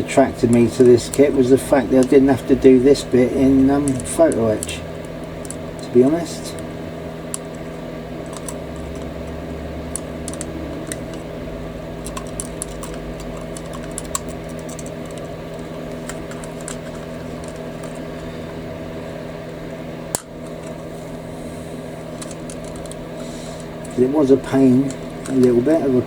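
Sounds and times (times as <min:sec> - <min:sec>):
steady electrical hum: 0:00.0 - 0:26.0
small parts and tools clicking: 0:03.6 - 0:05.9, 0:08.3 - 0:09.2, 0:09.9 - 0:11.3, 0:12.0 - 0:18.0, 0:22.2 - 0:23.0.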